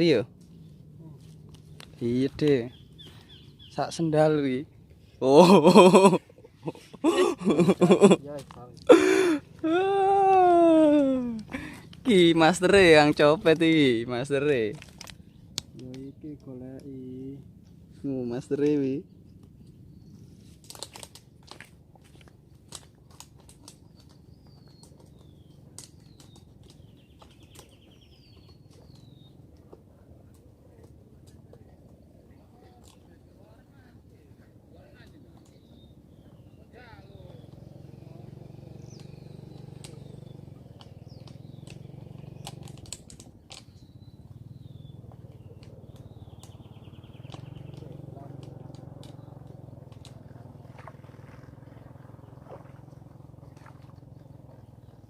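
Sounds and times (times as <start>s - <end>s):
birds chirping: 0.0s - 55.0s
low steady background hum: 0.0s - 55.0s
sharp clicks: 38.9s - 44.4s.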